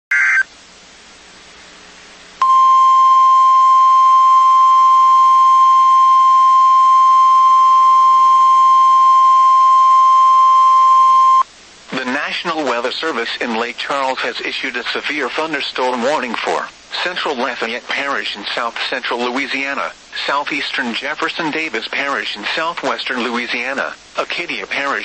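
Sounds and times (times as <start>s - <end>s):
faint radio hiss: 0.1s - 4.0s, 11.4s - 25.0s
loud steady alarm beep: 2.4s - 11.4s.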